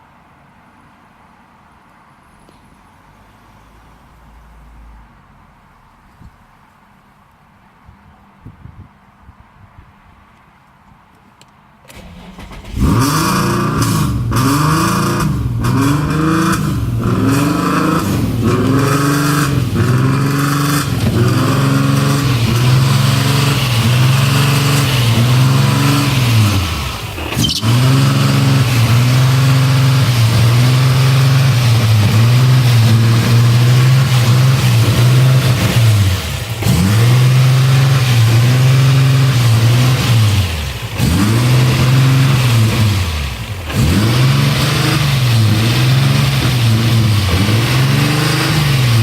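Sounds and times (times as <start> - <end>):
car engine revving and idling: 11.9 - 49.0.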